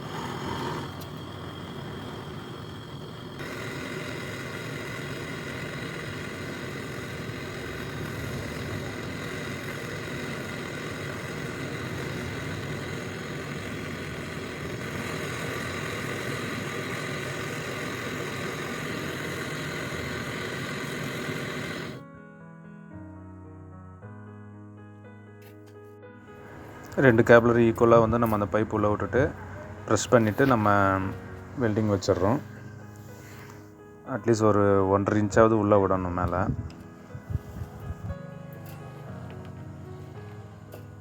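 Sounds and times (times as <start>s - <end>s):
machine running with hum: 0.0s - 22.0s.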